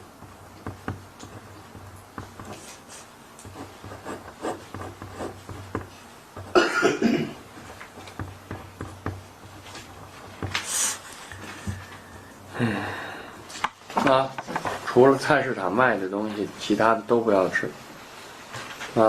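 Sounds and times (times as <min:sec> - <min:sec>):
small knocks: 0:00.1 - 0:02.6, 0:07.5 - 0:10.6
person coughing: 0:06.5 - 0:07.4.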